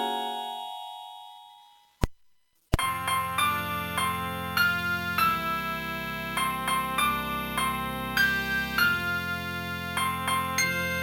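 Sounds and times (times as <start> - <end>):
synthesizer ringtone melody: 2.8 - 11.0.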